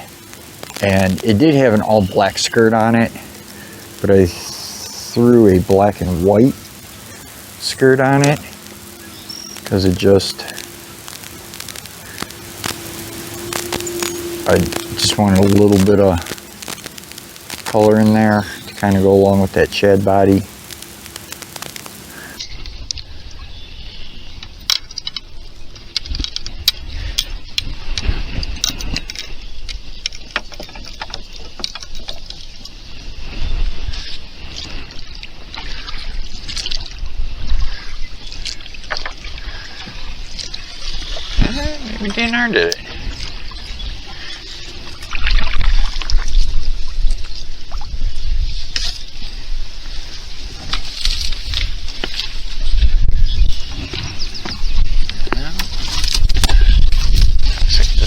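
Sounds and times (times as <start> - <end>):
low rumble: 0.0 - 22.4
wind rumble on microphone: 25.3 - 30.1, 42.9 - 58.0.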